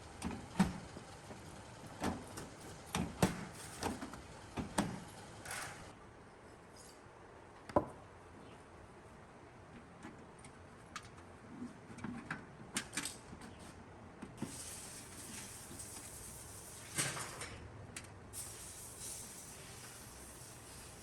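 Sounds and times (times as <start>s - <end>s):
faint hiss: 14.4s - 17.5s, 18.3s - 21.0s.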